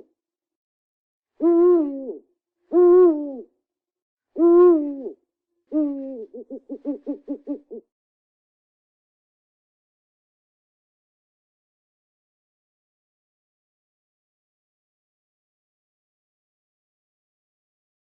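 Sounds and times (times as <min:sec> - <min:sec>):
owl hooting: 0:01.4 - 0:03.4, 0:04.4 - 0:07.8.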